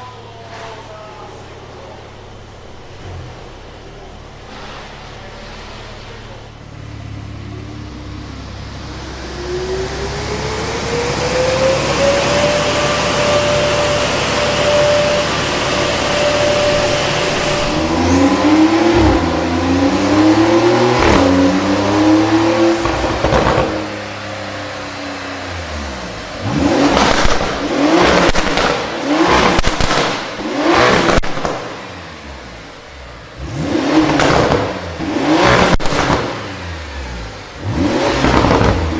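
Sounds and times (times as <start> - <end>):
sports car engine revving: 0.0 - 38.9
exhaust cracks and pops: 12.3 - 24.2, 26.4 - 32.0, 33.8 - 36.7, 37.8 - 38.9.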